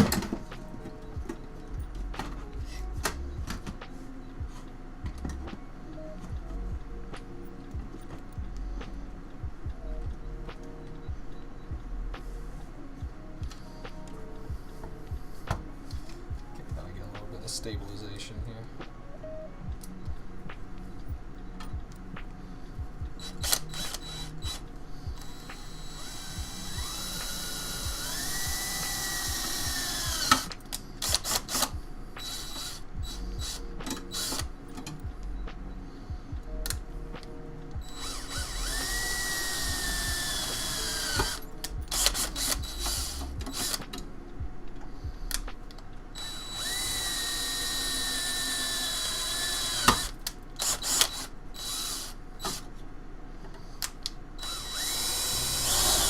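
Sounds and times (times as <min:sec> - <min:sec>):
power drill drilling metal: 0:23.2 - 0:24.6, 0:25.2 - 0:34.5, 0:37.8 - 0:43.8, 0:46.2 - 0:52.6, 0:54.4 - 0:56.0.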